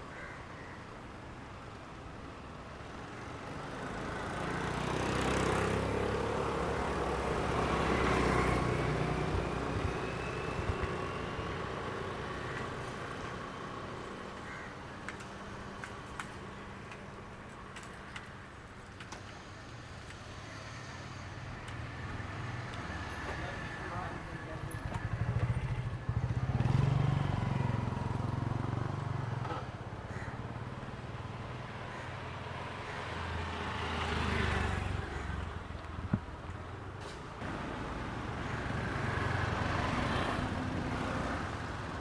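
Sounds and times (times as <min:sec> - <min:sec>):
street background noise: 0:00.0 - 0:42.0
vehicle engine passing by: 0:03.9 - 0:09.6, 0:25.0 - 0:29.4.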